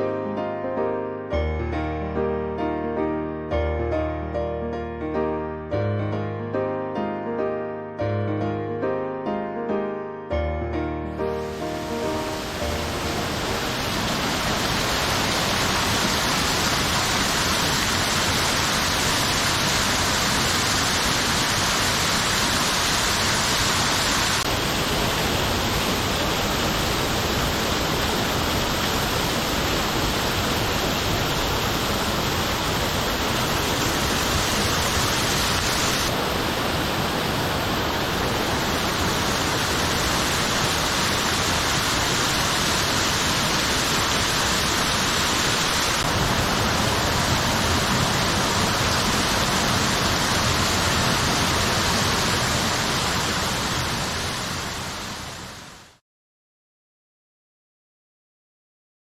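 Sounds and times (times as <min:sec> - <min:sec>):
waterfall pouring: 0:11.3 - 0:55.2.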